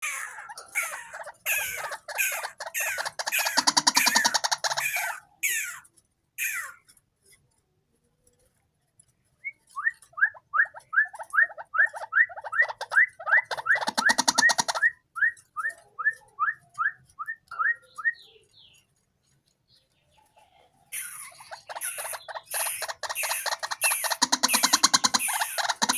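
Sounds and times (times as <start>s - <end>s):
waterhen calling: 0.0s - 5.8s, 9.8s - 15.4s, 21.0s - 25.9s.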